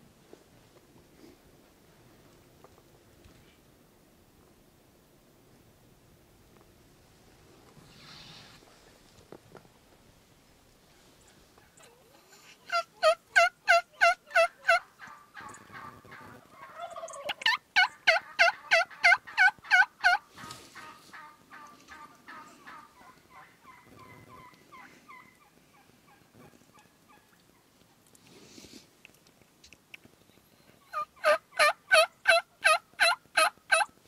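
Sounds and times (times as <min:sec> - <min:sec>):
wild turkey yelping: 0:10.9 - 0:27.7, 0:30.8 - 0:33.9.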